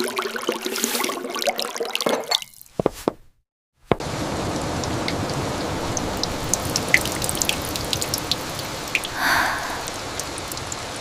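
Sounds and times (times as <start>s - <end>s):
sharp drips: 4.0s - 11.0s
steady rain falling: 4.0s - 11.0s
rush of noise: 9.1s - 10.2s.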